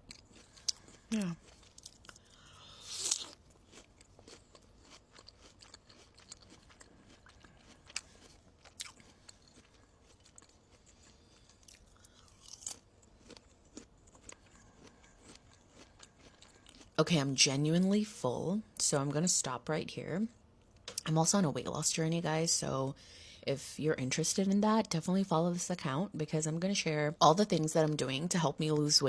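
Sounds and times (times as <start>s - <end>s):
chewing crunches: 0.0s - 17.0s
person biting fruit: 0.7s - 3.9s.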